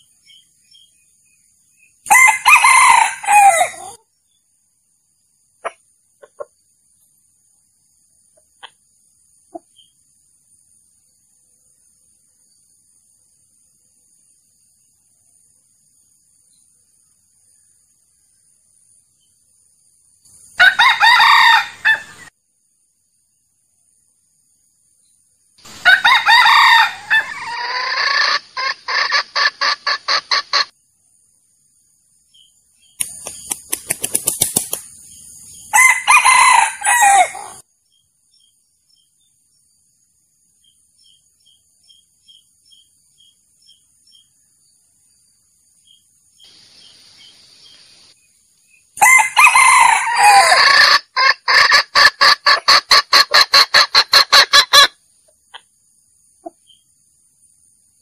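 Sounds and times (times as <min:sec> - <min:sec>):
rooster crowing: 0:02.1 - 0:04.0, 0:20.6 - 0:22.3, 0:25.8 - 0:28.4, 0:35.7 - 0:37.6, 0:49.0 - 0:51.5
sharp clucks: 0:05.6 - 0:06.6, 0:08.3 - 0:09.9, 0:27.6 - 0:30.8, 0:32.9 - 0:35.0, 0:50.6 - 0:55.7.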